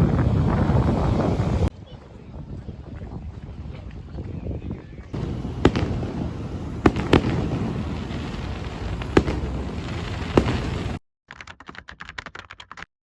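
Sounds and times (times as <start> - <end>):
sharp bangs: 5.2 - 11.0
steady low rumble: 5.2 - 11.0.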